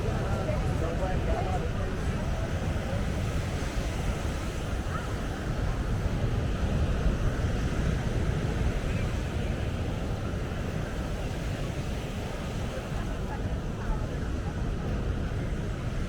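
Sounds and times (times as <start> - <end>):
faint voices: 0.0 - 16.0
ocean surf washing onto beach: 0.0 - 16.0.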